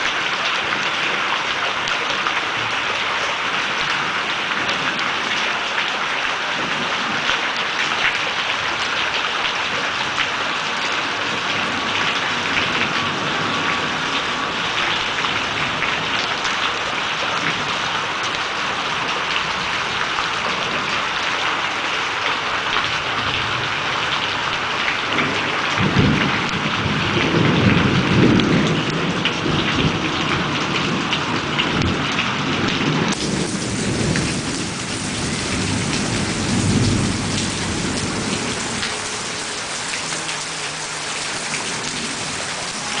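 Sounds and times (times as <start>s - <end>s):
heavy rain falling: 0.0s - 43.0s
low rumble of thunder: 25.0s - 39.4s.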